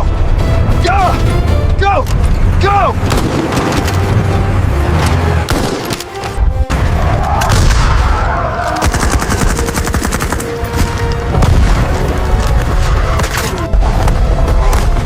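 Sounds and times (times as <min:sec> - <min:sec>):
music score: 0:00.0 - 0:15.0
heavy booms: 0:11.3 - 0:12.3.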